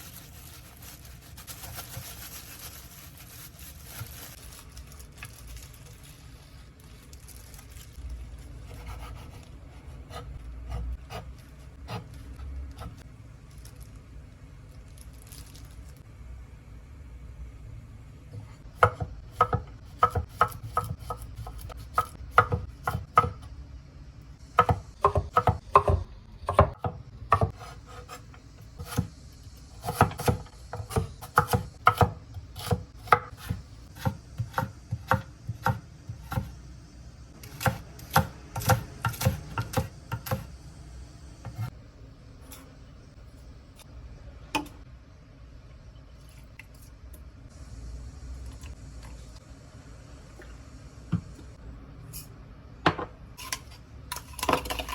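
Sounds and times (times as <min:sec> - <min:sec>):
knife chopping on cutting board: 0:18.8 - 0:23.4, 0:24.6 - 0:28.2, 0:29.8 - 0:36.5, 0:37.5 - 0:40.5.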